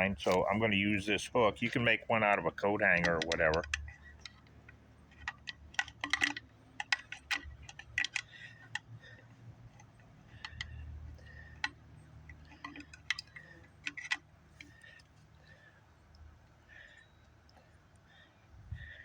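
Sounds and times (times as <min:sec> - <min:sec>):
dull handling rumble: 0:00.0 - 0:16.9
wire hook clicking on fuel tank: 0:01.2 - 0:15.1.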